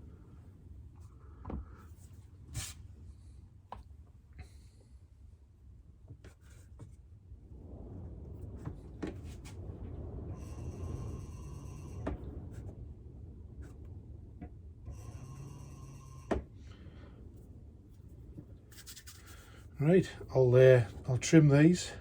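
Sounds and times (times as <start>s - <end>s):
clay rubbed by hand: 18.0s - 19.7s.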